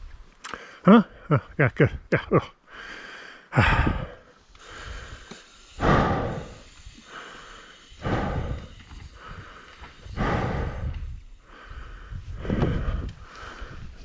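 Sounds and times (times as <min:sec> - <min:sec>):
person breathing hard: 0:02.6 - 0:14.0
bike tyres rumbling on trail: 0:03.9 - 0:14.0.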